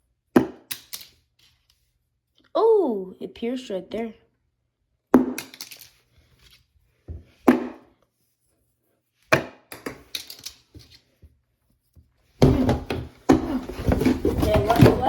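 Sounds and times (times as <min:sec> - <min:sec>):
plastic knives hitting target: 0:00.4 - 0:01.2, 0:05.2 - 0:05.9, 0:07.4 - 0:07.9, 0:09.3 - 0:10.9.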